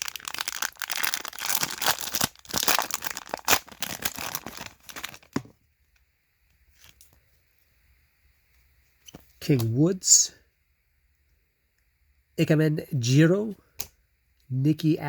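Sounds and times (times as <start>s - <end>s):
plastic wrapper crinkling and tearing: 0.0s - 5.5s.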